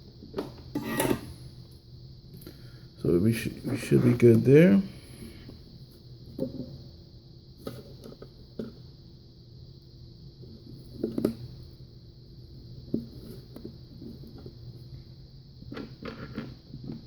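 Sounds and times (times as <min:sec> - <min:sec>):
steady hiss: 0:01.0 - 0:08.2.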